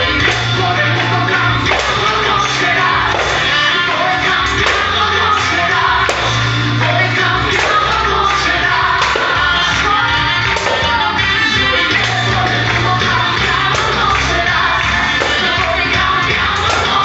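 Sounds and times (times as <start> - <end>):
worship song with band: 0.0 - 17.0.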